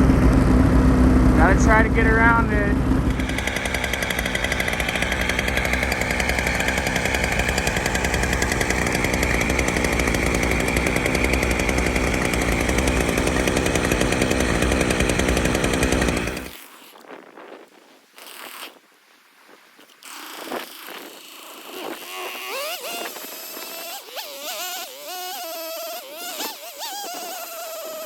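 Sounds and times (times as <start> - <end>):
snowmobile engine running: 0.0 - 16.6.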